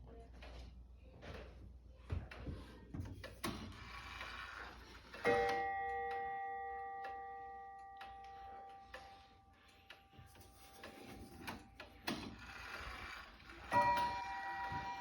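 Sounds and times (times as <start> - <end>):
clock gear train clicks and whir: 3.2 - 6.2, 10.8 - 15.0
clock bell stroke: 13.6 - 15.0.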